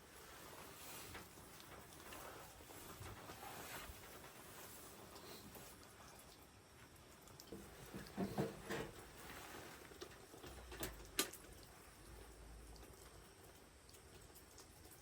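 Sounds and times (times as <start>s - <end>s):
soft handling knocks: 7.6s - 9.4s.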